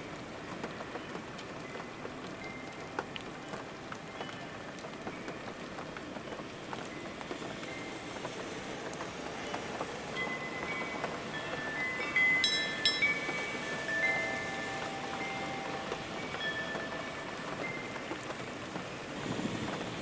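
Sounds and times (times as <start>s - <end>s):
raindrops ticking: 0.0s - 20.0s
steady rain falling: 0.0s - 20.0s
ringing chime-like tones: 10.2s - 18.2s.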